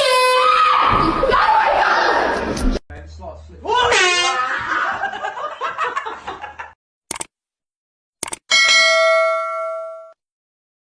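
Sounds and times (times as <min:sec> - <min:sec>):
people laughing: 0:04.1 - 0:06.8
short clicks: 0:07.1 - 0:07.3, 0:08.2 - 0:08.5
bell-like ding ringing: 0:08.5 - 0:10.2.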